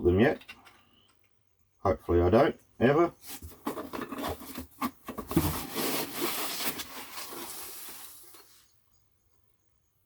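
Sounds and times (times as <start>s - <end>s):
scratchy rubbing and rustling: 3.2s - 8.7s.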